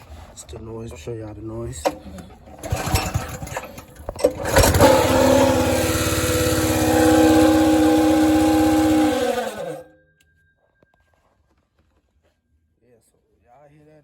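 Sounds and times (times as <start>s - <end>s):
engine knocks and clicks: 1.7s - 9.8s
small engine running with whine: 2.5s - 9.9s.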